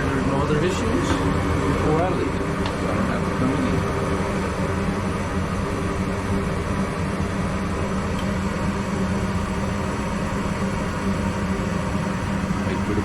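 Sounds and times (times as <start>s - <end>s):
draft inducer motor hum: 0.0s - 13.0s
gas burners rushing: 0.0s - 13.0s.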